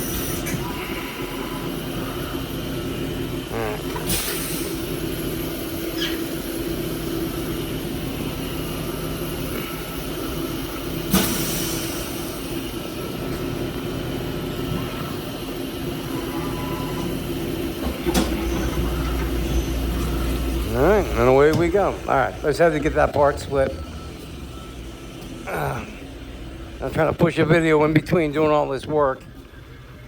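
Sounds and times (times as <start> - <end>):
electric motor humming: 18.8 - 22.4.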